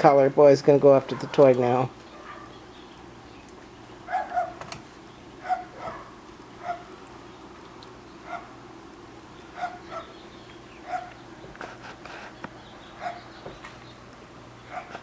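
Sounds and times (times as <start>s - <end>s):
puppy yapping: 2.1s - 2.6s, 4.1s - 4.7s, 5.4s - 6.9s, 9.6s - 10.1s, 10.8s - 11.2s, 13.0s - 13.3s, 14.7s - 15.0s.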